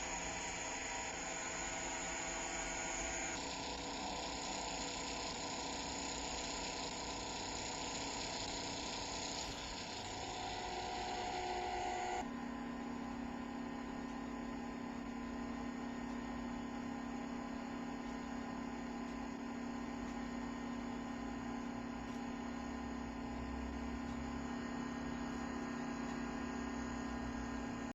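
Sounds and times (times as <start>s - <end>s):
steady low hum: 8.4s - 27.9s.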